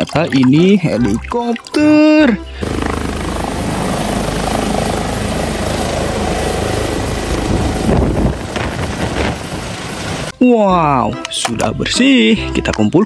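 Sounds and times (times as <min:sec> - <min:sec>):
helicopter engine rumble: 0:02.4 - 0:10.3
helicopter rotor chop: 0:02.6 - 0:10.3.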